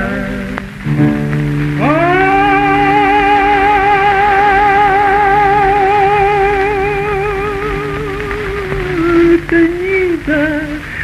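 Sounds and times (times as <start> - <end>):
plucked guitar accompaniment: 0.0 - 11.0.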